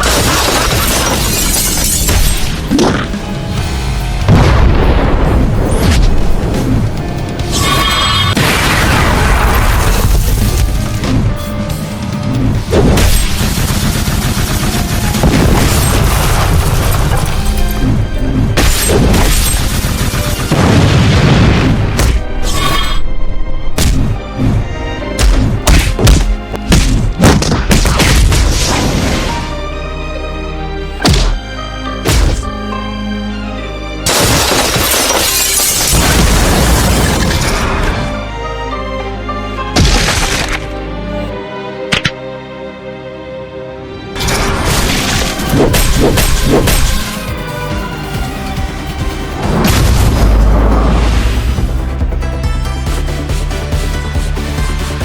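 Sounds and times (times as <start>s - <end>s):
background music: 0.0s - 55.0s
heavy booms and impacts: 3.9s - 7.0s, 20.5s - 22.3s.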